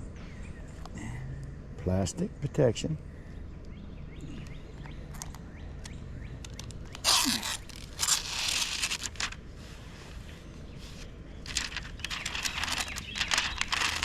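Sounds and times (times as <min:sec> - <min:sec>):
steady low background noise: 0:00.0 - 0:14.0
scraping and crunching handling noise: 0:06.4 - 0:10.3, 0:10.9 - 0:14.0.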